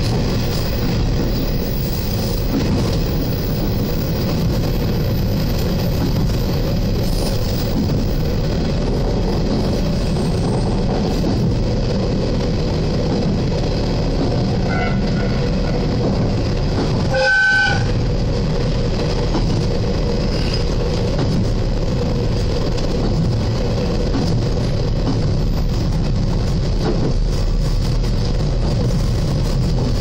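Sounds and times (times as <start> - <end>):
diesel railcar engine rumbling: 0.0 - 30.0
train horn toot: 14.6 - 15.9, 17.1 - 18.0.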